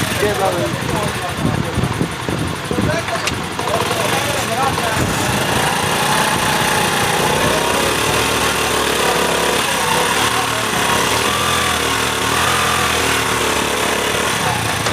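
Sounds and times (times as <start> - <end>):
vehicle engine running with clatter: 0.0 - 14.9.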